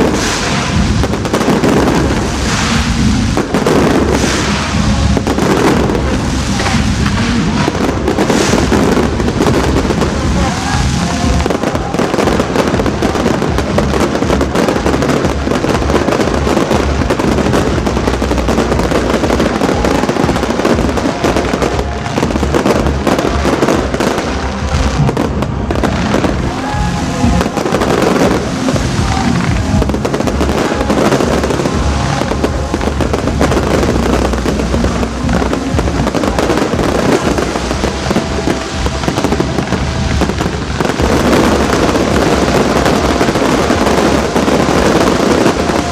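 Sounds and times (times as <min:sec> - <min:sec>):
fireworks bangs and crackling: 0:00.0 - 0:45.9
music playing: 0:00.0 - 0:45.9.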